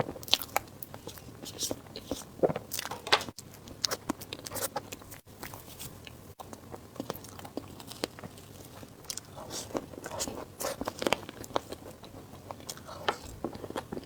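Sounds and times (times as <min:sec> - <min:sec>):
person chewing food: 0:00.0 - 0:14.0.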